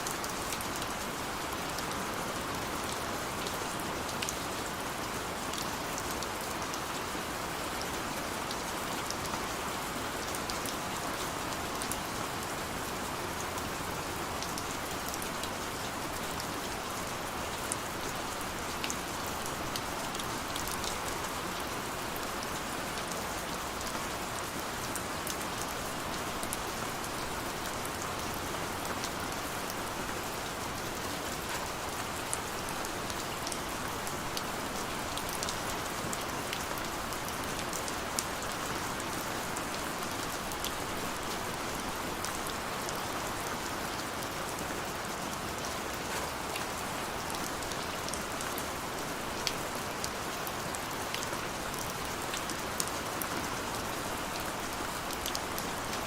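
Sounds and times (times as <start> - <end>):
steady rain falling: 0.0 - 56.0.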